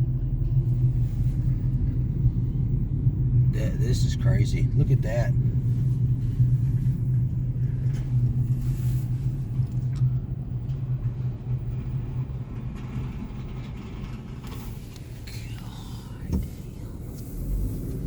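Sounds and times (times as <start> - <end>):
car engine and tyres rumbling: 0.0 - 18.0.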